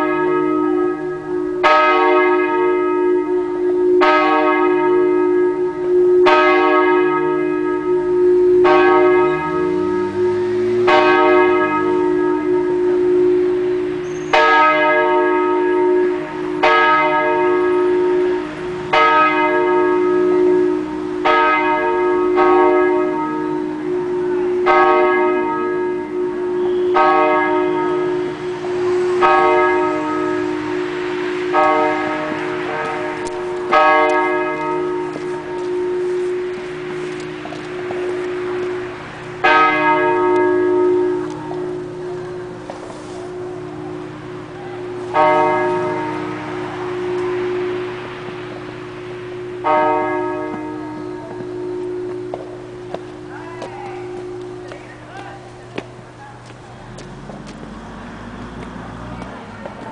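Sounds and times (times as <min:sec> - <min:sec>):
low ringing hum: 0:00.0 - 0:58.6
church bells ringing: 0:00.0 - 0:59.9.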